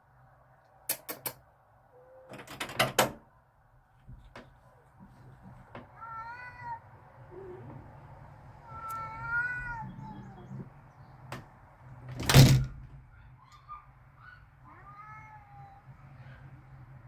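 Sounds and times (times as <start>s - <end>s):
sharp clicks or knocks: 0.9s - 1.4s
cat yowling: 5.9s - 7.9s, 8.6s - 10.7s, 13.4s - 16.5s.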